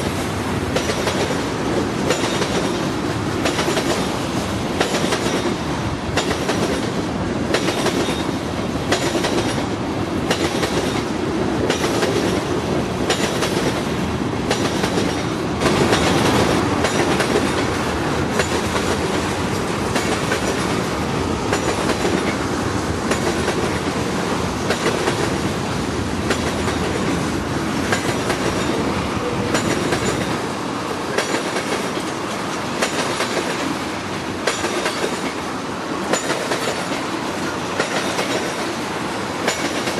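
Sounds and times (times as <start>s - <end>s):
train rumble: 0.0s - 39.9s
train wheels clacking over joints: 0.8s - 4.2s, 4.8s - 13.9s, 14.5s - 20.9s, 21.5s - 22.4s, 23.1s - 24.0s, 26.3s - 27.3s, 27.9s - 30.5s, 31.1s - 33.8s, 34.4s - 35.4s, 36.0s - 38.8s, 39.4s - 39.9s.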